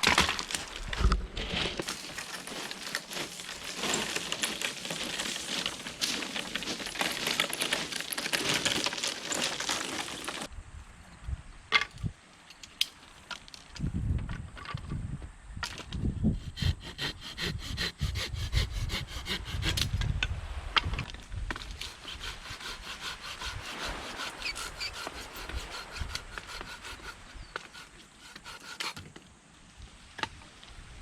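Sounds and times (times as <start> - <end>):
hand saw cutting wood: 1.8 - 10.5, 16.3 - 20.0, 21.6 - 29.1.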